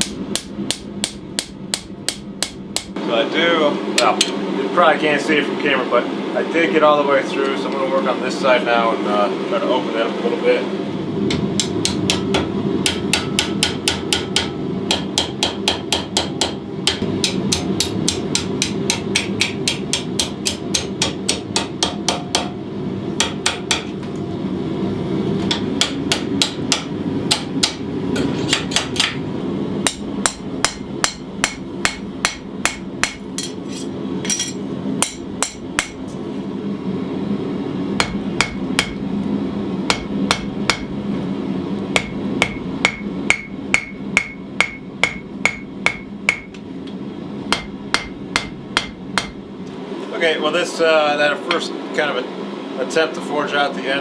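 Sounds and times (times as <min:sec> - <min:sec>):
hammer striking steel on anvil: 0:00.0 - 0:03.0, 0:11.3 - 0:22.6, 0:23.2 - 0:24.0, 0:25.4 - 0:29.2, 0:29.8 - 0:36.1, 0:38.0 - 0:39.0, 0:39.9 - 0:41.0, 0:41.9 - 0:46.6, 0:47.5 - 0:49.4.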